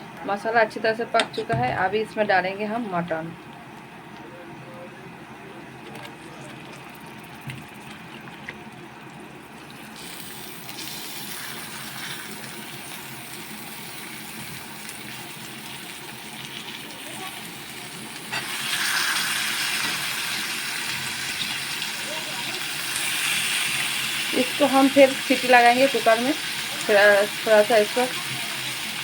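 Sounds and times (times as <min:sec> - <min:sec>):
meat sizzling in a pan: 0:09.5 - 0:29.0.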